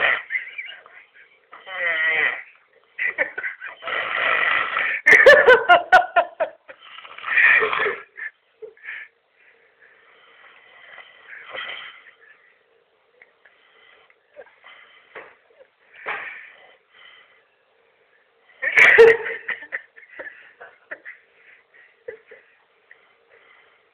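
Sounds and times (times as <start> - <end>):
man snoring: 0.0 - 0.4, 1.6 - 2.6, 3.6 - 5.1, 6.8 - 8.1, 10.0 - 12.2.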